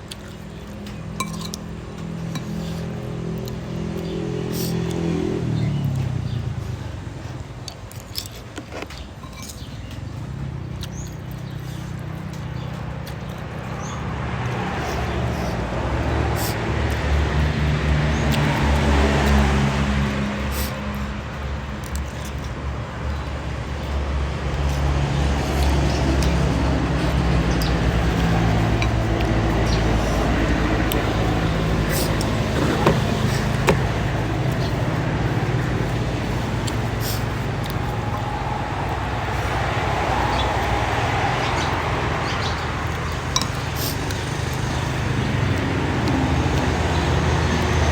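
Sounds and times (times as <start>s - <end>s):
road noise: 0.0s - 47.9s
vehicle engine running: 14.1s - 47.9s.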